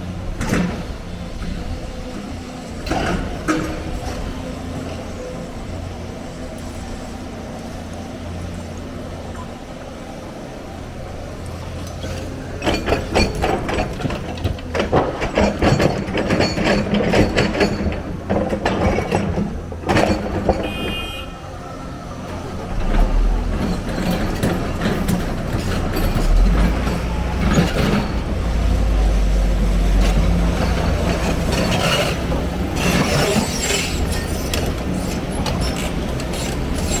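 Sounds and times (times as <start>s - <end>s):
excavator diesel engine rumbling: 0.0s - 37.0s
clattering and knocking: 12.6s - 21.0s.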